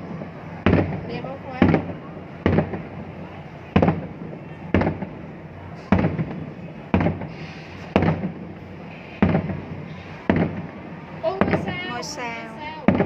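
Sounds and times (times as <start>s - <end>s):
firework shells bursting: 0.2s - 11.8s.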